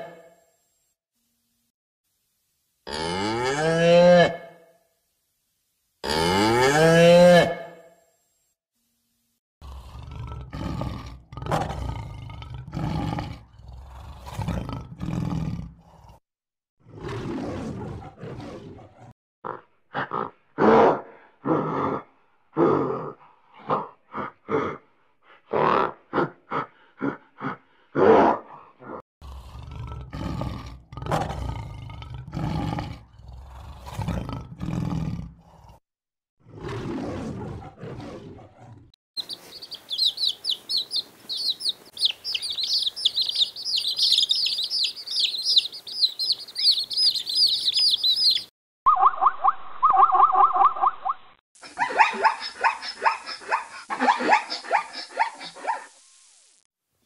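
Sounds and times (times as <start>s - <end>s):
large animals deep calls: 41.4s - 48.5s.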